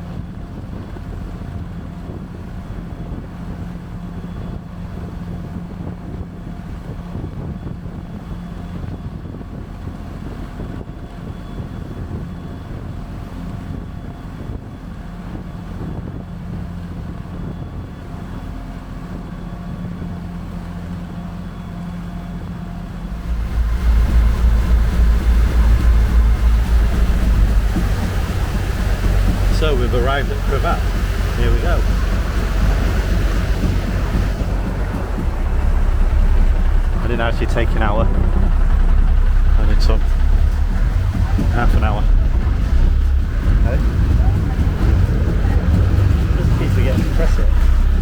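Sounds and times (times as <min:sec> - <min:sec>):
boat engine humming: 0:00.0 - 0:48.0
wind: 0:00.0 - 0:48.0
water noise: 0:16.2 - 0:48.0.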